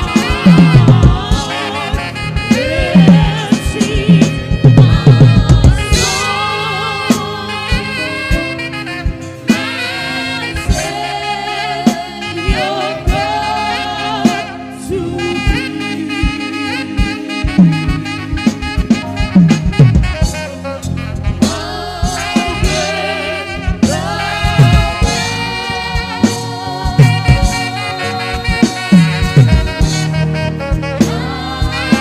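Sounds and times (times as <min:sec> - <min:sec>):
low tom drum thumps: 0:00.0 - 0:06.4, 0:15.5 - 0:20.6, 0:21.2 - 0:27.8, 0:28.4 - 0:32.0
gospel worship music: 0:00.0 - 0:32.0.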